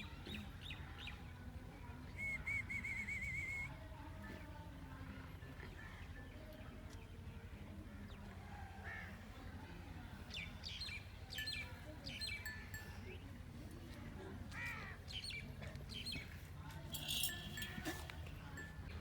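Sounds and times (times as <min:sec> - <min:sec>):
small birds chirping: 0:10.1 - 0:13.4, 0:14.6 - 0:17.8.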